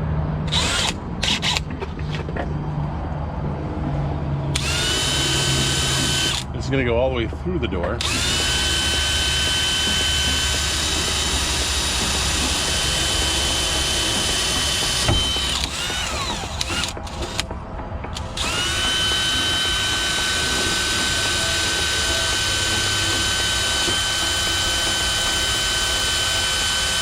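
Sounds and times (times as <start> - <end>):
electric drill running: 0.5 - 1.8, 4.6 - 6.5, 8.0 - 17.5, 18.2 - 27.0.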